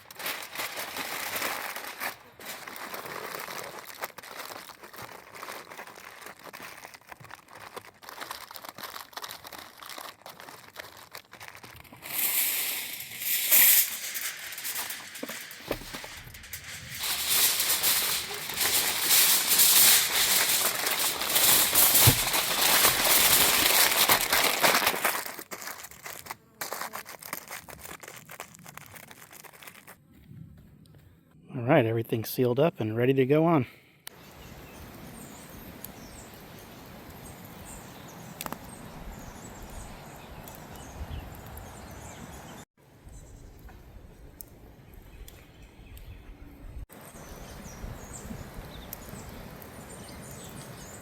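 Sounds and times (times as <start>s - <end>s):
aluminium foil crinkling: 0.0s - 30.0s.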